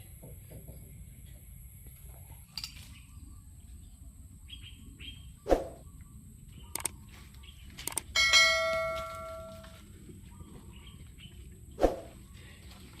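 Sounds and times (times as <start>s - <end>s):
light clicks: 6.7s - 7.0s
metallic clang ringing: 8.2s - 9.8s.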